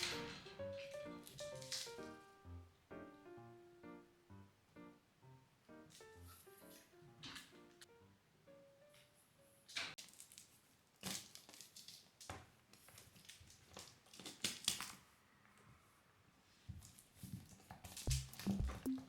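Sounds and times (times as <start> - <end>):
rustling and crinkling scuffs: 0.0 - 2.3, 5.9 - 7.7, 9.9 - 15.0, 16.5 - 18.3
music with bass drum beat: 18.1 - 19.0.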